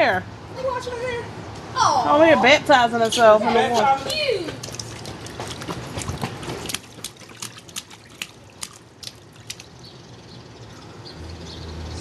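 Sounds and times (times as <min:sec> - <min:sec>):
water dripping and splashing: 0:04.0 - 0:09.8.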